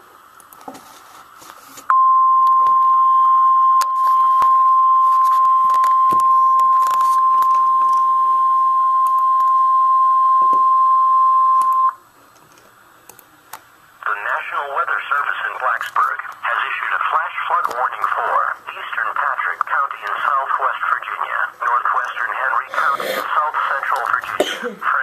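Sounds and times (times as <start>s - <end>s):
steady high warning beep: 1.9s - 12.0s
faint radio static with clicks: 3.7s - 9.7s, 11.6s - 25.0s.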